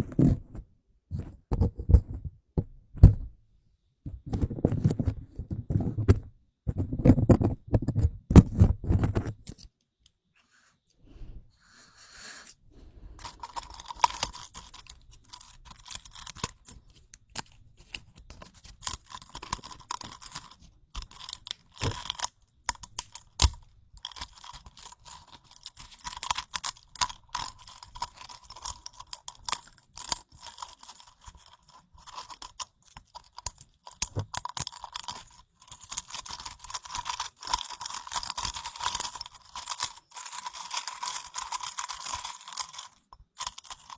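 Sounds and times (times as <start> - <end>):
dry crackling and crunching: 13.2 - 43.9.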